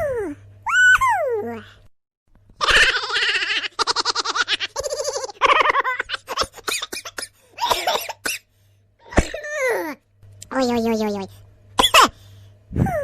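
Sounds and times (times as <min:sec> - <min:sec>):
person laughing with squeals: 0:02.6 - 0:06.6.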